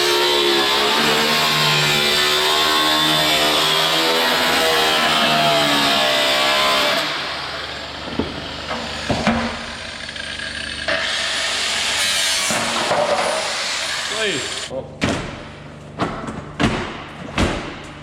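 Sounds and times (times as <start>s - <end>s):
knocks and clatters in workshop: 8.0s - 18.0s.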